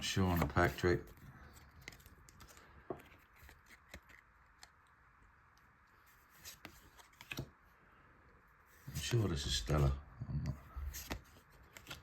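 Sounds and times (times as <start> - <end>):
trading cards clicking and rustling: 0.0 - 4.9, 6.4 - 7.6, 10.5 - 12.0.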